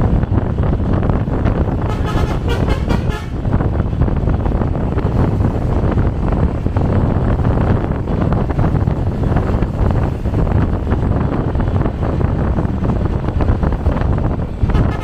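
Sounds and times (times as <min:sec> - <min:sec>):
low rumble of moving vehicle: 0:00.0 - 0:15.0
multi-tone bus horn: 0:01.6 - 0:03.7, 0:14.6 - 0:15.0.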